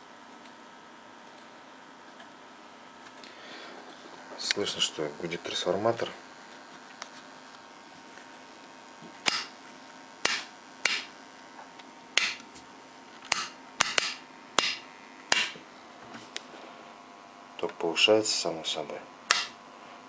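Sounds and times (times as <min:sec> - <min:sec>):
sharp clicks: 0:09.2 - 0:09.5, 0:12.2 - 0:12.5, 0:13.3 - 0:15.6, 0:19.3 - 0:19.6.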